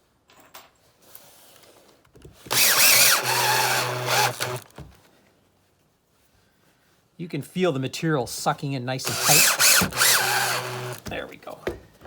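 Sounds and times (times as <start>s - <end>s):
power drill driving a screw: 2.5s - 4.7s, 9.0s - 11.1s.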